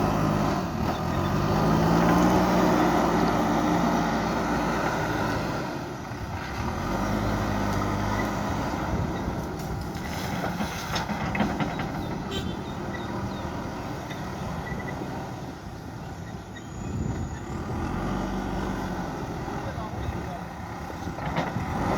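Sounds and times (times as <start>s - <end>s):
diesel engine running: 0.0s - 21.9s
clanks and rattles: 9.1s - 12.3s.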